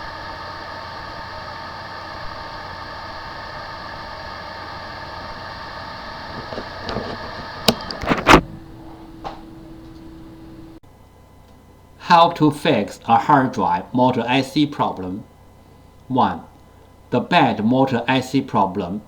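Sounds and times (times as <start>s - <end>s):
small machine whirring: 0.0s - 17.8s
low steady hum: 0.0s - 19.0s
sharp clicks and knocks: 6.3s - 8.5s.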